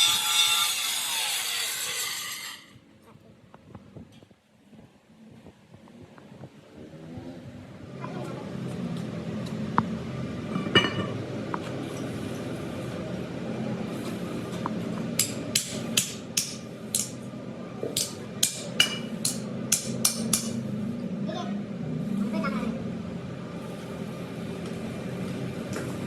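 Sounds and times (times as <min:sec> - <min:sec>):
low workshop hum: 0:00.0 - 0:26.0
hammer striking metal: 0:15.2 - 0:17.2, 0:18.0 - 0:20.6.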